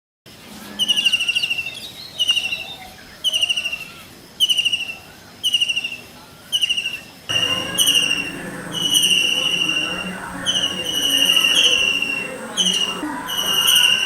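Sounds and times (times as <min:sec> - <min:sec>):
faint calls of other birds: 0:00.5 - 0:14.0
kingfisher shrill trills: 0:07.3 - 0:14.0.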